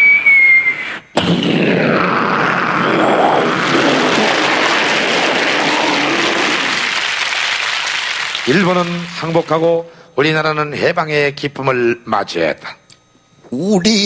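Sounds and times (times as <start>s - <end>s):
vocal explosion imitation: 1.1s - 7.2s.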